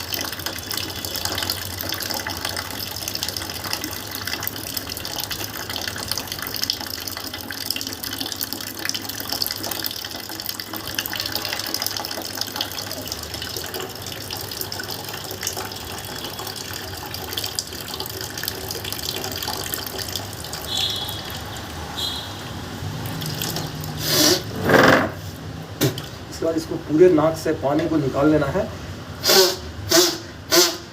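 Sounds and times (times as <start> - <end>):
water pouring from nostril into basin: 0.0 - 21.9, 22.8 - 24.6.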